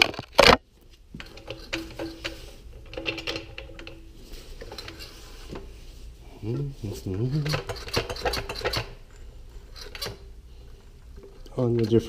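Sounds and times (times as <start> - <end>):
faint steady whine: 0.0 - 12.0
metallic clicking and rattling: 1.2 - 5.1, 7.3 - 10.2.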